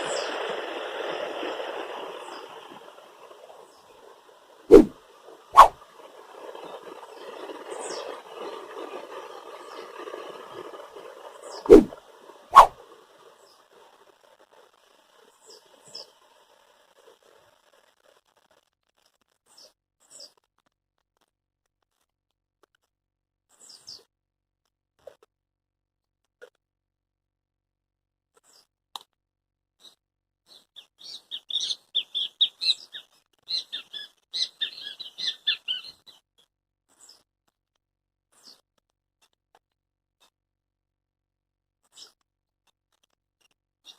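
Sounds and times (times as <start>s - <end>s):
faint bird chirps: 30.5s - 36.2s.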